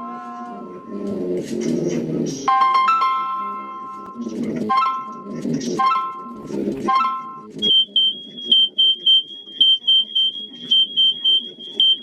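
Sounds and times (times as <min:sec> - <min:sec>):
fire alarm beeping: 0:02.5 - 0:05.2, 0:05.8 - 0:12.0.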